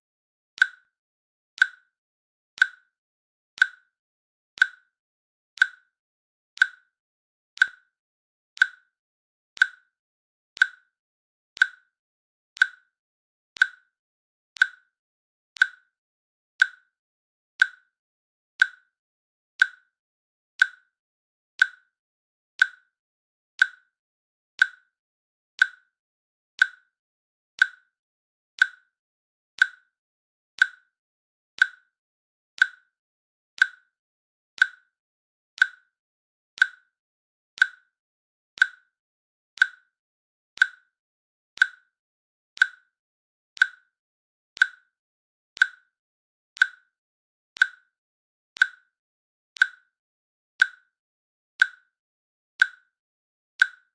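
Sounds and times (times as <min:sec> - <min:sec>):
timer clicking: 0:00.6 - 0:00.9, 0:01.6 - 0:01.9, 0:02.6 - 0:02.9, 0:03.6 - 0:03.9, 0:04.6 - 0:04.9, 0:05.6 - 0:05.9, 0:06.6 - 0:06.9, 0:07.6 - 0:07.9, 0:08.6 - 0:08.9, 0:09.6 - 0:09.9, 0:10.6 - 0:10.9, 0:11.6 - 0:12.0, 0:12.6 - 0:12.9, 0:13.6 - 0:13.9, 0:14.6 - 0:15.0, 0:15.6 - 0:15.9, 0:16.6 - 0:16.9, 0:17.6 - 0:17.9, 0:18.6 - 0:18.9, 0:19.6 - 0:19.9, 0:20.6 - 0:20.9, 0:21.6 - 0:22.0, 0:22.6 - 0:22.9, 0:23.6 - 0:23.9, 0:24.6 - 0:24.9, 0:25.6 - 0:26.0, 0:26.6 - 0:27.0, 0:27.6 - 0:28.0, 0:28.6 - 0:29.0, 0:29.6 - 0:30.0, 0:30.6 - 0:31.0, 0:31.6 - 0:32.0, 0:32.6 - 0:33.0, 0:33.6 - 0:34.0, 0:34.6 - 0:35.0, 0:35.6 - 0:36.0, 0:36.6 - 0:37.0, 0:37.6 - 0:38.0, 0:38.6 - 0:39.0, 0:39.6 - 0:40.0, 0:40.6 - 0:41.0, 0:41.6 - 0:42.0, 0:42.6 - 0:43.0, 0:43.6 - 0:44.0, 0:44.6 - 0:45.0, 0:45.6 - 0:46.0, 0:46.6 - 0:47.0, 0:47.6 - 0:48.0, 0:48.6 - 0:48.9, 0:49.6 - 0:49.9, 0:50.6 - 0:50.9, 0:51.6 - 0:51.9, 0:52.6 - 0:52.9, 0:53.6 - 0:53.9.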